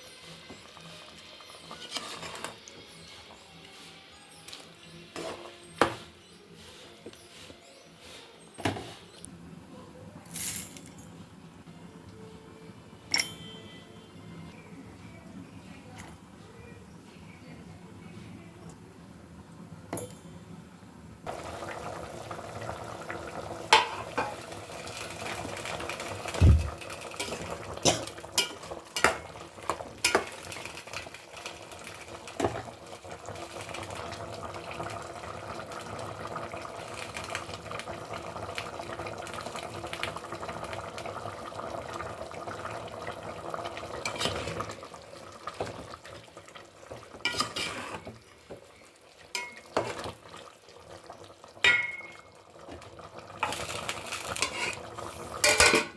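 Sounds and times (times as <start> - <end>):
food sizzling in a pan: 0.0 - 6.6, 21.2 - 55.9
utensil scraping a pan: 1.6 - 4.1, 47.2 - 48.2, 53.4 - 55.9.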